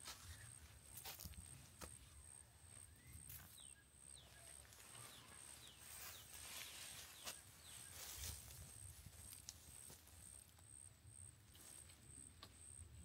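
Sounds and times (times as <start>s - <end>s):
bird chirping: 2.0s - 8.4s.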